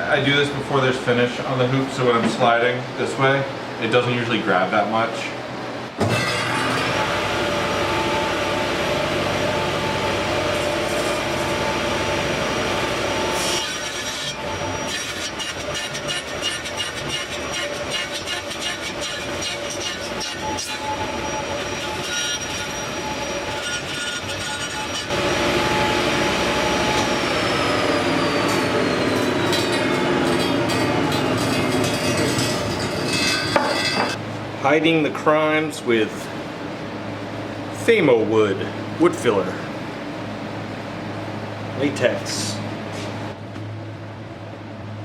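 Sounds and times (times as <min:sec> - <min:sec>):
table saw cutting wood: 0:06.0 - 0:34.2
high tone sliding down: 0:25.2 - 0:33.0.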